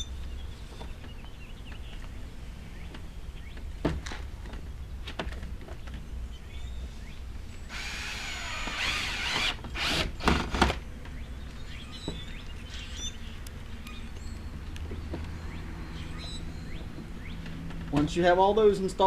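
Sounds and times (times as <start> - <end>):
power drill drilling plastic: 7.7 - 10.7.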